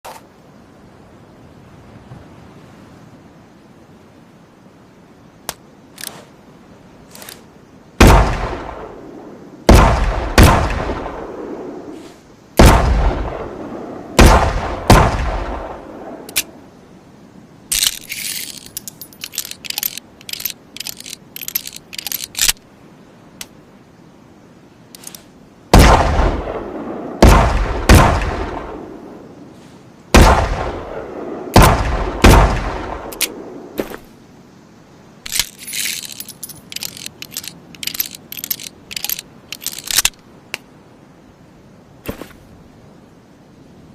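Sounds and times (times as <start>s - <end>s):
metallic clicking and rattling: 17.7s - 22.6s, 35.3s - 40.2s.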